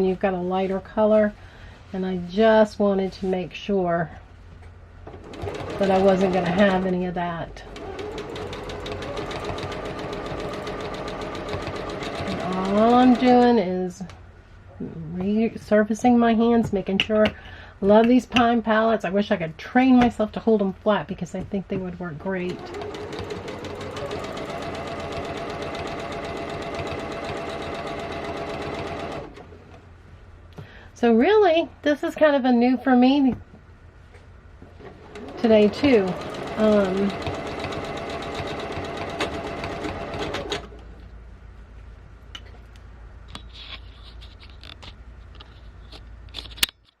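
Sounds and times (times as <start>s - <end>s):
sewing machine stitching: 5.1s - 6.9s, 7.7s - 13.5s, 22.4s - 29.7s, 34.8s - 40.8s.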